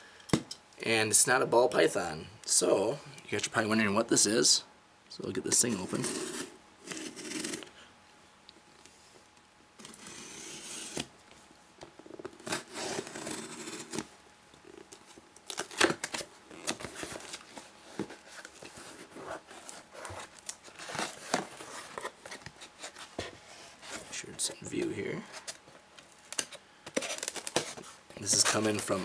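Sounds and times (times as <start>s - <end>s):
packing tape tearing: 9.8s - 11.1s, 12.2s - 14.1s, 14.7s - 17.5s, 26.2s - 29.0s
cardboard and packing rustling: 14.7s - 29.0s.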